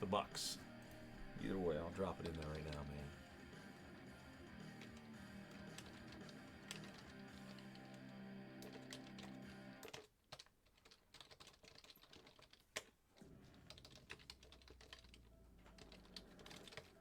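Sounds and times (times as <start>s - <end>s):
soft background music: 0.0s - 9.9s, 13.2s - 17.0s
typing on computer keyboard: 2.0s - 3.1s, 4.5s - 17.0s.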